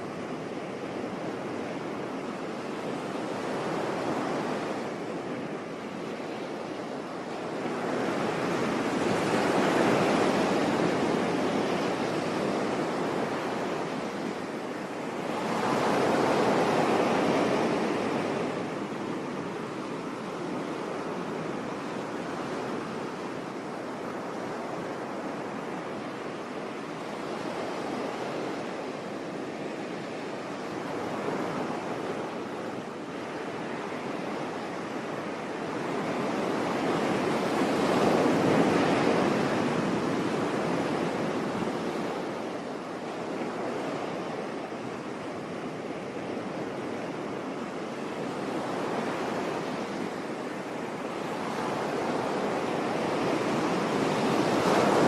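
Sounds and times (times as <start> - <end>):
waves breaking on beach: 0.0 - 55.0.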